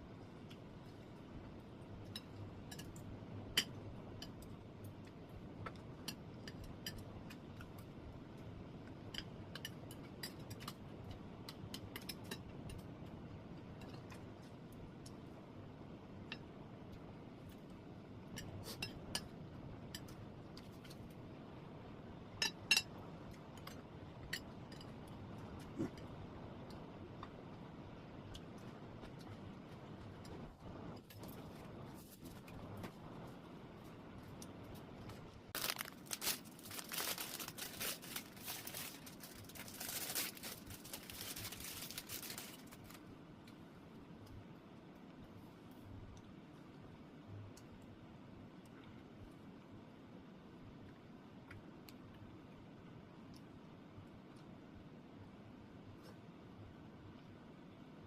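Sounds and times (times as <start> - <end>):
close-up crinkling and rustling: 31.0 - 43.1.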